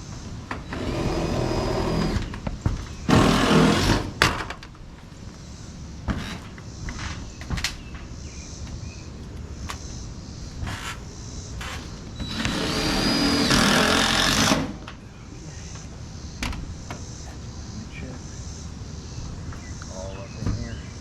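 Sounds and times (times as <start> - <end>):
power drill whining: 0.6 - 2.4, 3.1 - 4.2, 10.6 - 14.8.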